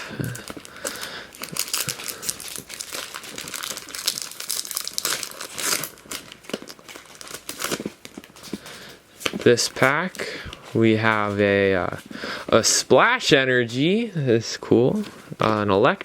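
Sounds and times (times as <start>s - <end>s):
foil wrapper crinkling and tearing: 0.0s - 10.2s.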